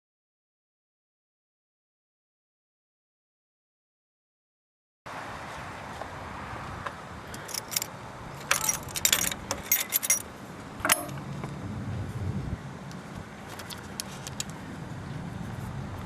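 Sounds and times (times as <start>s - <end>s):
keys jangling: 7.4s - 11.2s.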